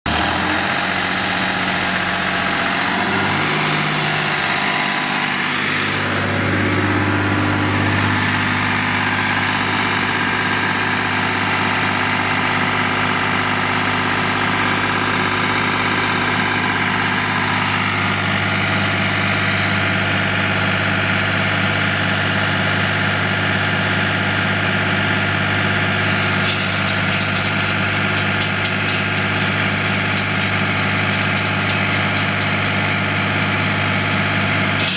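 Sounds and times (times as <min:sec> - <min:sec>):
concrete saw diesel engine: 0:00.0 - 0:34.9
fast high rattling: 0:26.4 - 0:33.1.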